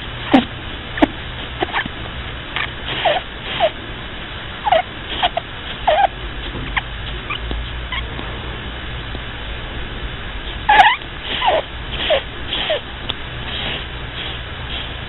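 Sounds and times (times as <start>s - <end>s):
rabbit snoring squeaks: 0.0s - 1.9s, 2.6s - 3.8s, 4.6s - 8.2s, 10.4s - 15.0s
low steady hum: 0.0s - 15.0s.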